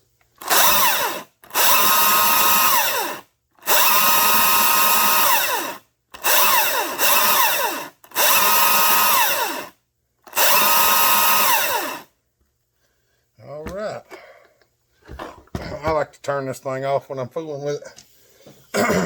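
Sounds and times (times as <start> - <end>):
battery chainsaw whirring: 0.4 - 12.1.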